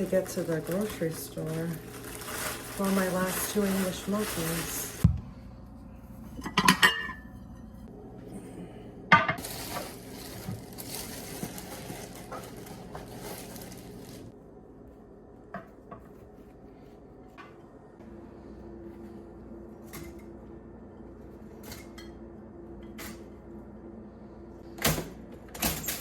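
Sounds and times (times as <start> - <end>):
dishes clinking: 6.4 - 7.7.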